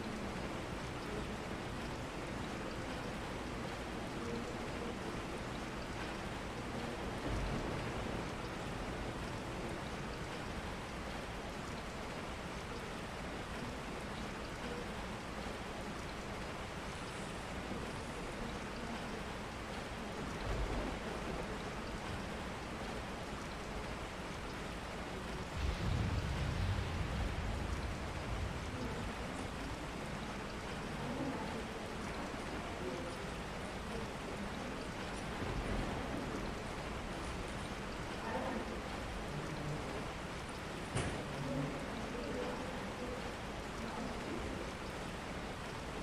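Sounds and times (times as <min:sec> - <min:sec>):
steady rain falling: 0:00.0 - 0:46.0
low rumble: 0:25.5 - 0:29.7.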